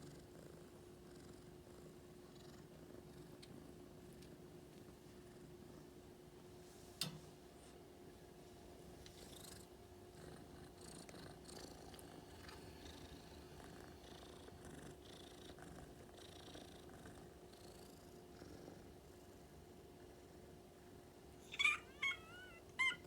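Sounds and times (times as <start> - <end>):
cat snoring faintly: 9.1 - 19.6.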